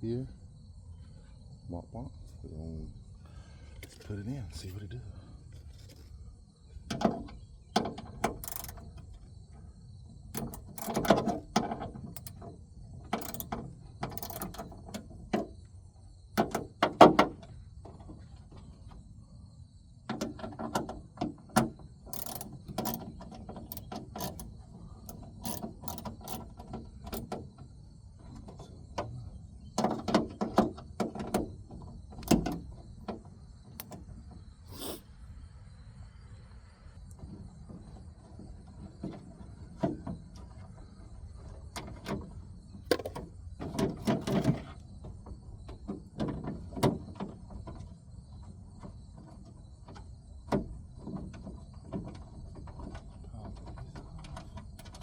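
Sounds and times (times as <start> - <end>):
metallic clicks and clatter of tools: 8.2 - 9.1, 10.3 - 12.5, 13.1 - 15.0, 22.1 - 27.3, 42.9 - 43.2
rapid ratchet clicking: 8.3 - 9.0, 10.4 - 12.4, 13.1 - 14.8, 22.1 - 24.5, 25.1 - 27.3.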